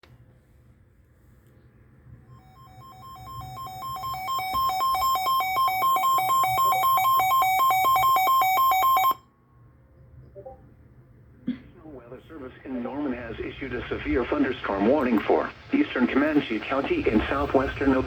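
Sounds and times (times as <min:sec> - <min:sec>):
two-tone alert beeping warble: 0:02.3 - 0:09.2.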